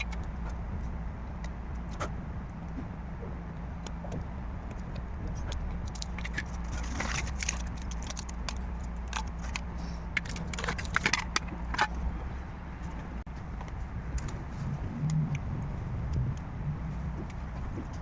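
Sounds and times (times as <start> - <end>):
small hard parts clicking and tapping: 0.0 - 12.1
steady low hum: 0.0 - 18.0.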